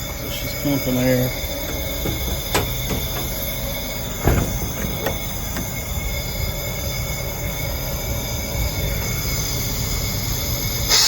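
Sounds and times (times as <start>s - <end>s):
air compressor running: 0.2s - 6.9s.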